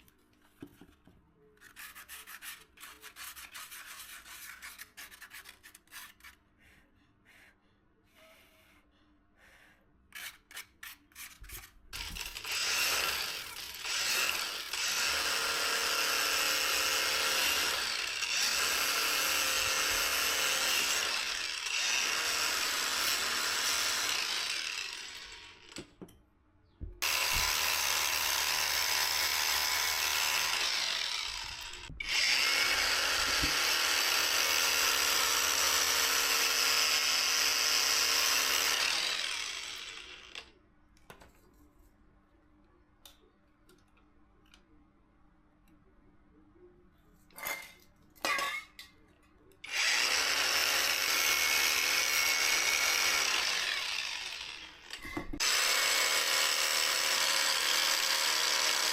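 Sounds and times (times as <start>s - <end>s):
power tool running: 12.0s - 25.8s, 27.0s - 40.5s, 49.7s - 58.9s.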